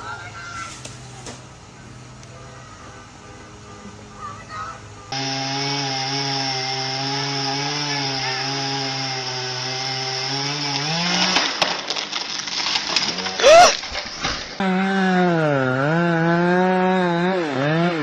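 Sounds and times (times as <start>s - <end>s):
chainsaw cutting: 5.1s - 18.0s
sharp cracks: 10.5s - 14.7s.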